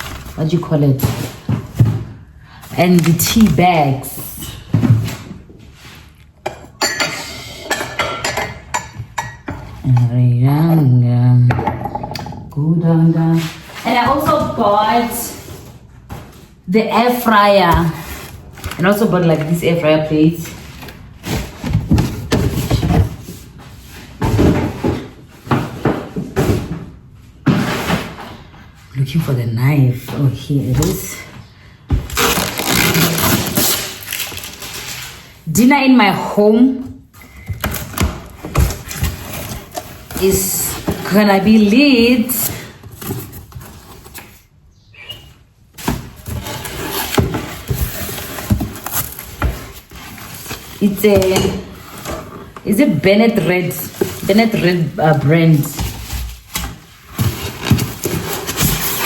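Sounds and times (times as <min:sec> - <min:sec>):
cardboard scraping and rustling: 0:37.3 - 0:44.5, 0:45.8 - 0:59.0.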